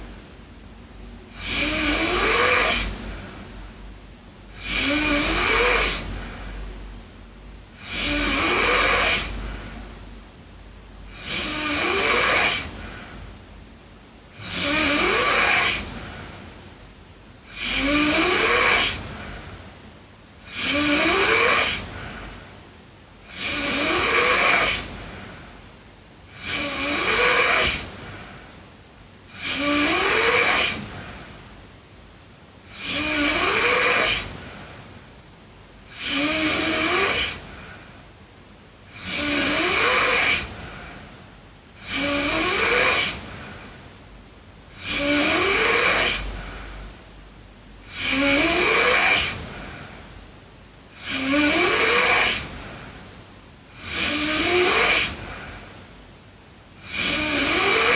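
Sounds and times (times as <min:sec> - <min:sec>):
quiet breathing: 0:00.0 - 0:57.9
girl snoring: 0:01.3 - 0:03.6, 0:04.5 - 0:06.8, 0:07.8 - 0:10.0, 0:11.1 - 0:13.3, 0:14.3 - 0:16.4, 0:17.4 - 0:19.6, 0:20.4 - 0:22.5, 0:23.2 - 0:25.6, 0:26.3 - 0:28.5, 0:29.3 - 0:31.4, 0:32.7 - 0:34.7, 0:35.9 - 0:38.0, 0:38.8 - 0:41.1, 0:41.8 - 0:43.8, 0:44.7 - 0:47.0, 0:47.8 - 0:50.2, 0:50.9 - 0:53.0, 0:53.7 - 0:55.7, 0:56.8 - 0:57.9.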